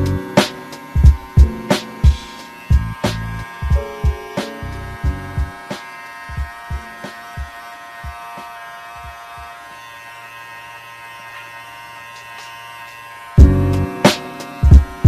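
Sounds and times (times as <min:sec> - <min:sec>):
low beat thumps: 0:00.0 - 0:08.3, 0:13.4 - 0:15.0
hair clipper buzzing: 0:00.0 - 0:15.0.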